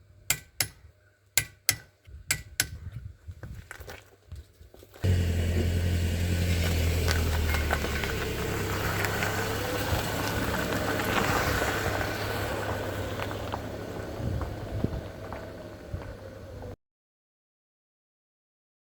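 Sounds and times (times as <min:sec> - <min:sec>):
car engine humming: 0:05.0 - 0:16.8.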